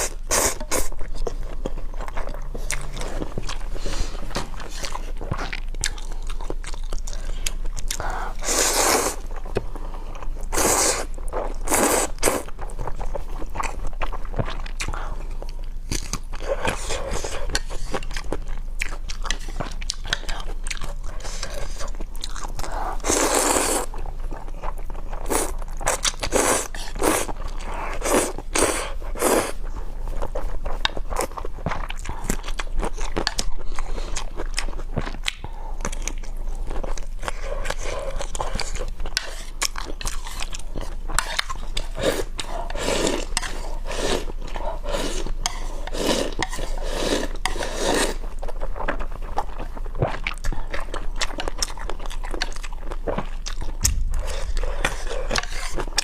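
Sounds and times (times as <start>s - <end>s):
person chewing and biting food: 0.0s - 56.0s.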